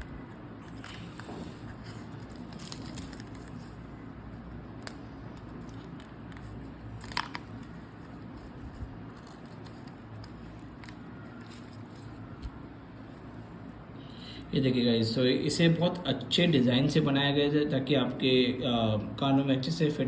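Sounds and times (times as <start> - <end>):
packaging rustling: 0.6 - 3.9, 4.7 - 12.6.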